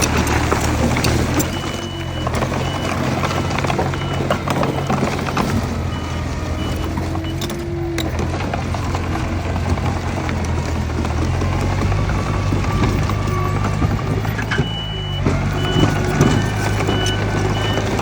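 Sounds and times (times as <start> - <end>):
heavy diesel machinery running: 0.0 - 18.0
reversing alarm beeps: 1.3 - 8.1, 12.2 - 18.0.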